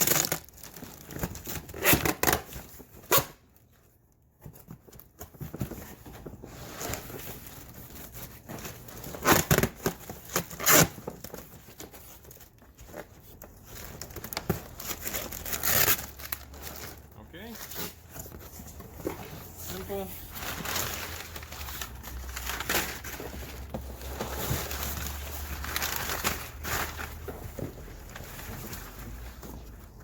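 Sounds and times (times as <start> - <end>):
cardboard box tearing and rustling: 13.0 - 17.0, 19.0 - 28.9.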